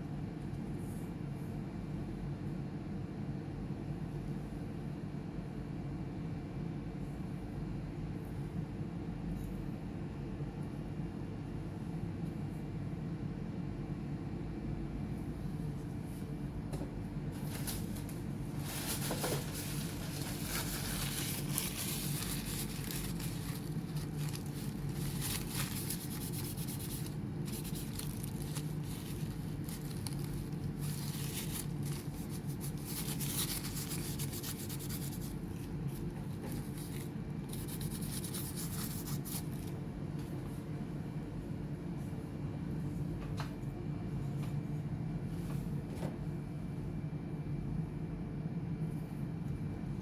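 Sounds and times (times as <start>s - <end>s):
steady low hum: 0.0s - 50.0s
rubbing and scraping on laptop: 17.4s - 39.7s.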